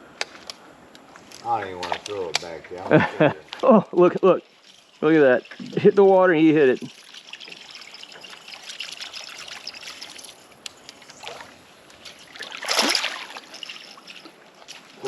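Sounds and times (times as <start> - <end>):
water lapping against boat: 11.0 - 15.0.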